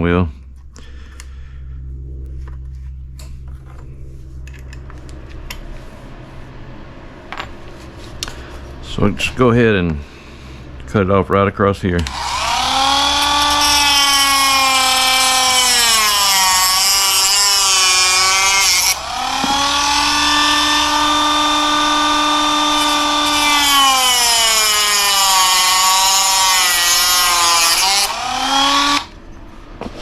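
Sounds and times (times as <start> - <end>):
rotary tool cutting whine: 12.0 - 29.2.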